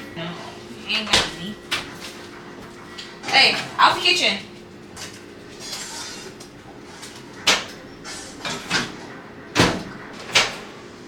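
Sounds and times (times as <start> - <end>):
kitchen handling clatter: 5.0 - 10.7.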